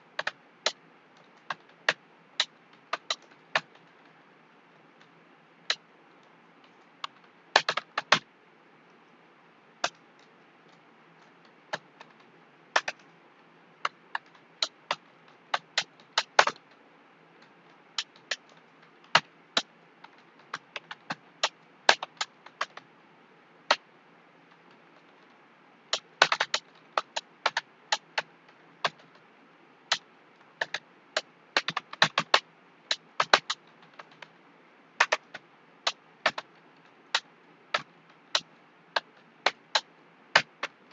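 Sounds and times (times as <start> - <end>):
computer keyboard keystrokes: 12.8 - 13.0, 31.6 - 34.3.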